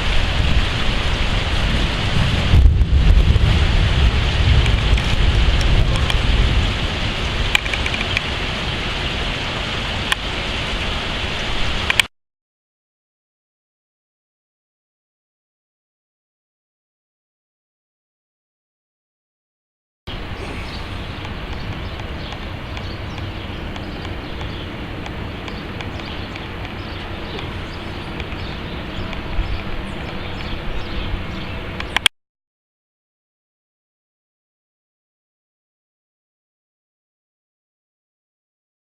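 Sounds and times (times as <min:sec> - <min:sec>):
steady rain falling: 0:00.0 - 0:12.1, 0:20.1 - 0:32.1
wind rumbling on microphone: 0:00.0 - 0:12.1, 0:20.1 - 0:32.1
raindrops ticking: 0:07.3 - 0:08.5, 0:20.8 - 0:30.7.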